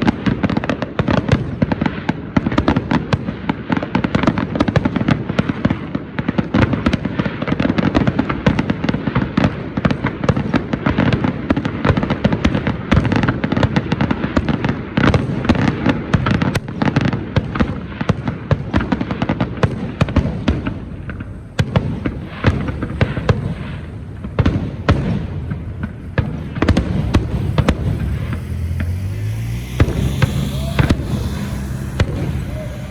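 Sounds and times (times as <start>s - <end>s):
rapid popping and crackling: 20.1s - 32.9s.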